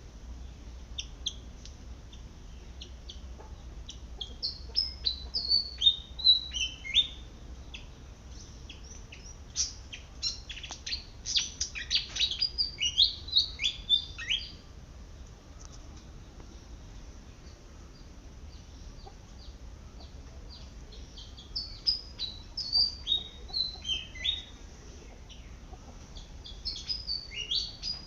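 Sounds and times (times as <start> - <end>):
bird singing high whistled notes: 4.4 - 7.2, 8.7 - 14.6, 26.4 - 28.0.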